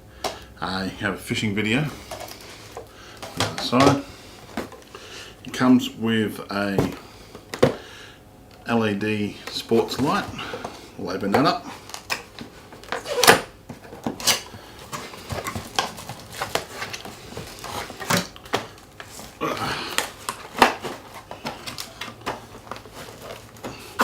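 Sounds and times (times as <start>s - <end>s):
packaging rustling: 1.4s - 5.4s, 9.4s - 24.0s.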